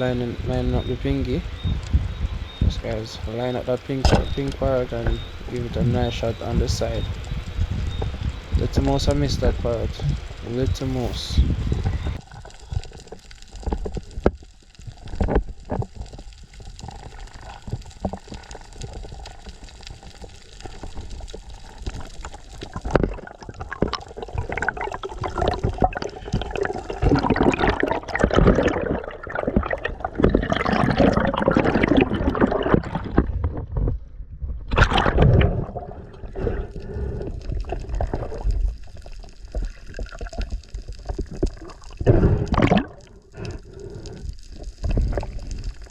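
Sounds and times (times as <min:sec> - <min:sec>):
sea water gurgling and sloshing: 0:00.0 - 0:45.9.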